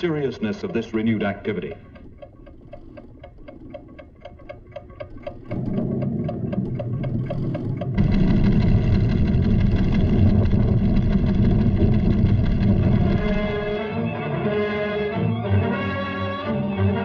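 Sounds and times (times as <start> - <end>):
quick ticking instruments: 0.0 - 14.0
deep rumble of volcano tremor: 5.1 - 14.0
held orchestral notes: 13.1 - 17.0.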